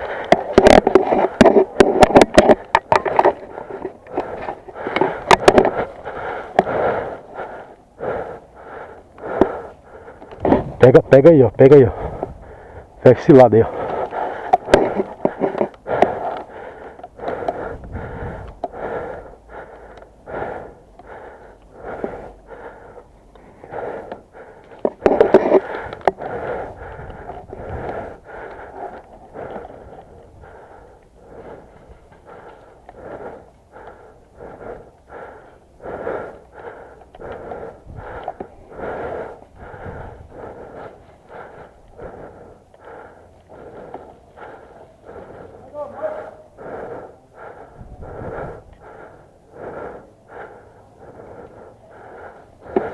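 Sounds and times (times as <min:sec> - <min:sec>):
person breathing hard and wheezily: 0:00.0 - 0:10.8, 0:11.7 - 0:52.9.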